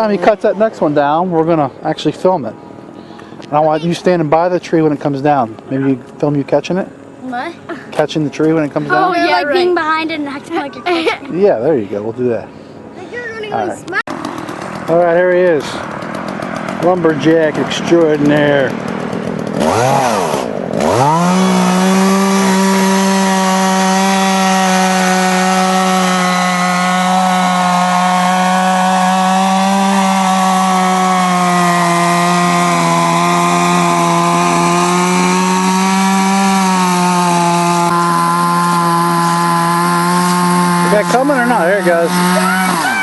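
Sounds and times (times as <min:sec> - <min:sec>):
chainsaw cutting tree: 0:14.0 - 0:43.0.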